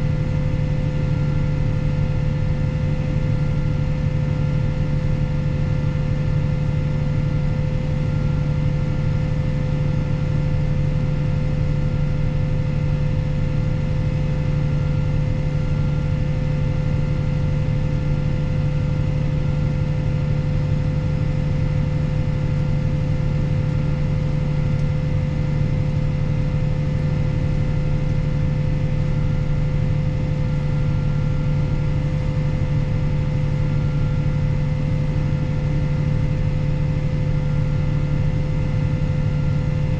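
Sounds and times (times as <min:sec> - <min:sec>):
steady whine: 0:20.6 - 0:39.9.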